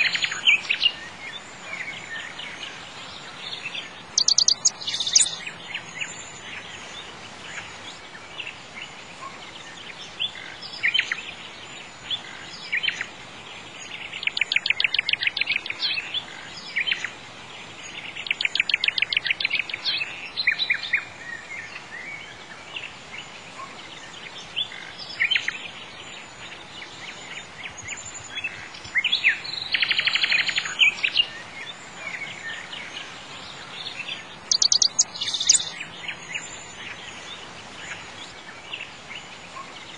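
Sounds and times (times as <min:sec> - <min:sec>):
outdoor background hiss: 0:00.0 - 0:39.9
songbirds chirping and singing: 0:00.0 - 0:39.9
bird trills: 0:04.2 - 0:05.4, 0:34.5 - 0:35.8.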